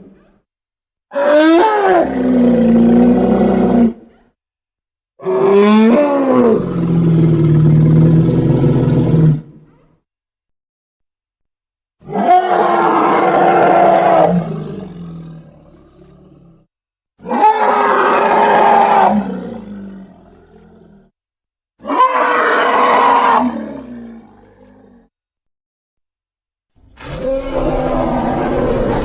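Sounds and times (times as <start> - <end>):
creature roar: 12.0 - 16.6, 17.2 - 21.1, 21.8 - 25.1, 26.8 - 29.0.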